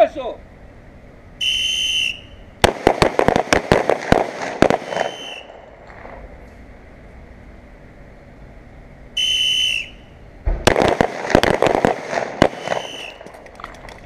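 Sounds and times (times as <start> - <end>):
whistle blast: 1.4 - 2.5, 4.8 - 5.5, 9.2 - 10.2, 12.5 - 13.3.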